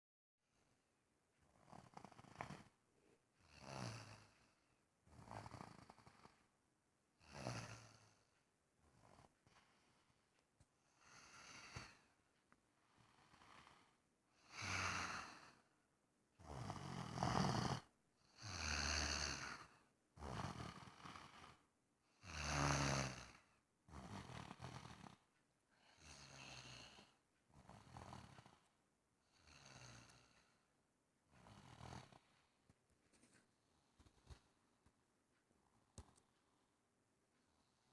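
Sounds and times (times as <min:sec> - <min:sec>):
snoring: 0:01.5 - 0:02.8, 0:03.4 - 0:06.5, 0:07.2 - 0:10.1, 0:10.9 - 0:12.1, 0:12.9 - 0:15.6, 0:16.4 - 0:28.7, 0:29.3 - 0:30.6, 0:31.3 - 0:32.5.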